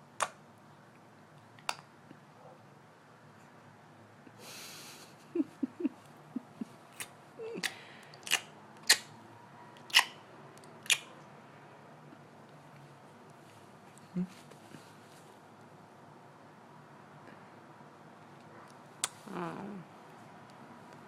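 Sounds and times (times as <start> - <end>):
sharp mouth clicks: 7.0 - 9.1, 9.8 - 11.2, 19.0 - 19.3
short low mouth squeaks: 9.9 - 10.2.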